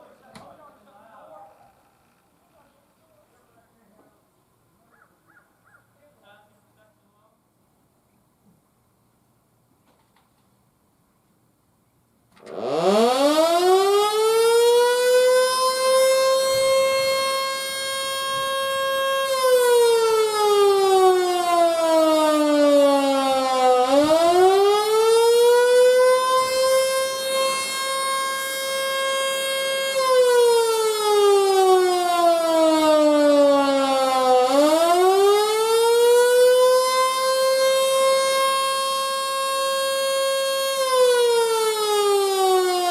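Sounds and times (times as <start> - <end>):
electric siren wailing: 12.4 - 42.9.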